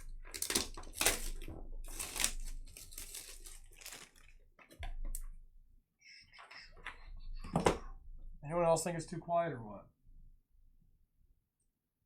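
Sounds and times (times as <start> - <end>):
card pack wrappers tearing: 0.0 - 4.4.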